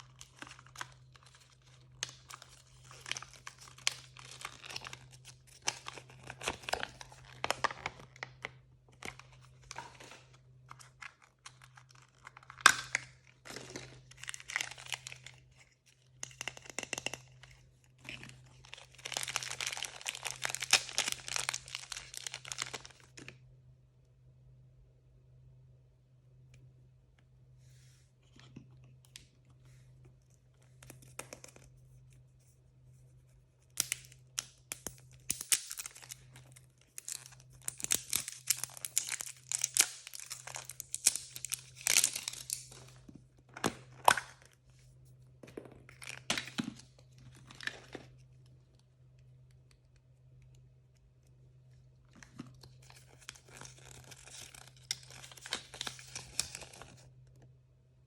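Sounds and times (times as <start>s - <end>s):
toy wrappers tearing and crinkling: 0.0s - 8.4s, 9.0s - 15.6s, 18.0s - 23.3s, 33.8s - 44.5s, 52.2s - 57.1s.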